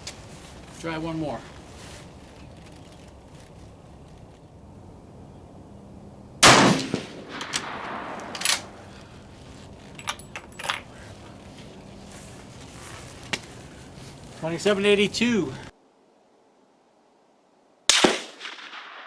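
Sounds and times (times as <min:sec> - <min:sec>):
rifle shot: 0:06.4 - 0:08.8, 0:17.9 - 0:19.0.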